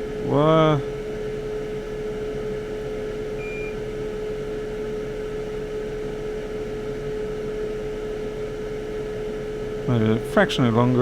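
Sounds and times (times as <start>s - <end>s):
equipment hum with fan rushing: 0.0s - 11.0s
faint high beep: 3.4s - 3.8s.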